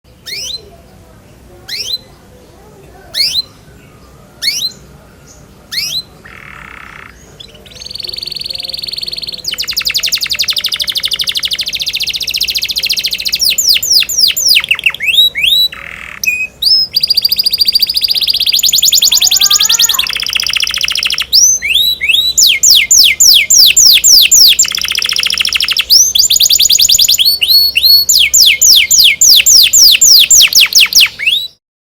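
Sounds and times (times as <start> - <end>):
canary singing trills: 0.1 - 31.6.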